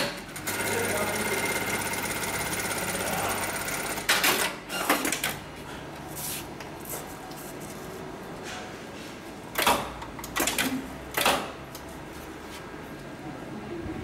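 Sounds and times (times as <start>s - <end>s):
sewing machine clunks and clicks: 4.1s - 5.4s, 9.6s - 11.5s.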